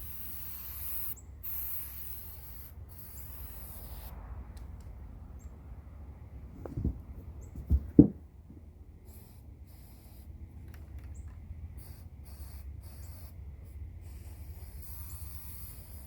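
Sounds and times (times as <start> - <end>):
steady low rumble: 2.4 - 12.3
dull knocks: 6.6 - 8.2.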